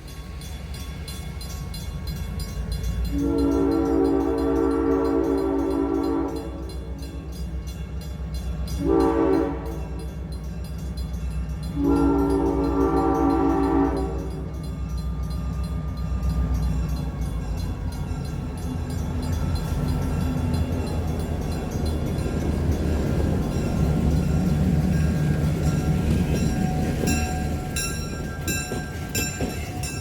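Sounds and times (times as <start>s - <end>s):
train rumbling past: 0.0s - 30.0s
locomotive horn blasts: 3.1s - 6.9s, 8.8s - 10.1s, 11.7s - 14.6s.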